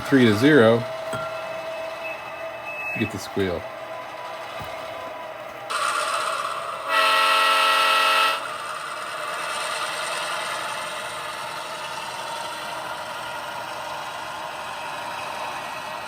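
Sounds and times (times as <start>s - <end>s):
diesel engine sound: 0.0s - 16.0s
locomotive horn blast: 6.8s - 8.8s.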